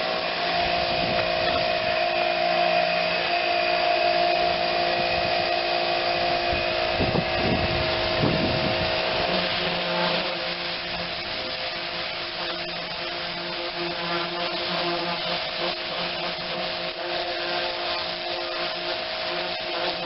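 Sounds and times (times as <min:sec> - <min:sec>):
pressure washer pump whining: 0:00.0 - 0:20.0
water spray hissing: 0:00.0 - 0:20.0.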